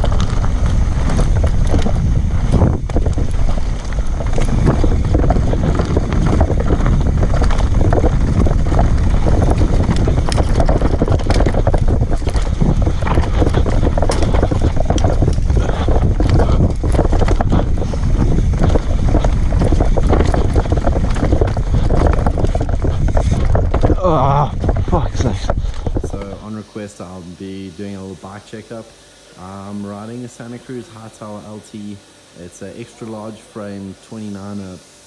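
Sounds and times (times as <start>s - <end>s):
bike clattering and knocking: 0.0s - 26.5s
wind buffeting microphone: 0.0s - 26.7s
steady rumble: 0.0s - 35.0s.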